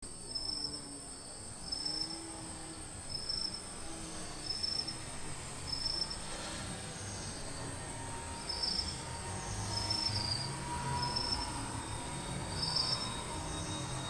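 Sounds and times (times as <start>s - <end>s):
insect chirp: 0.0s - 14.0s
insect high-pitched drone: 0.0s - 14.0s.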